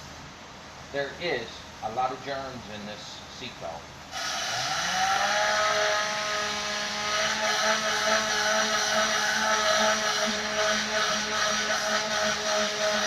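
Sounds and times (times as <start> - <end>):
compressed air hissing: 4.1 - 4.7, 5.4 - 13.0
whirring hum of spinning nozzle: 4.1 - 13.0.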